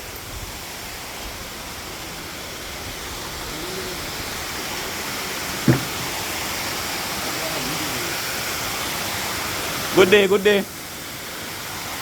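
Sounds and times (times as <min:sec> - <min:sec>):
waterfall rushing: 0:01.6 - 0:12.0
brief knock: 0:05.7 - 0:06.2.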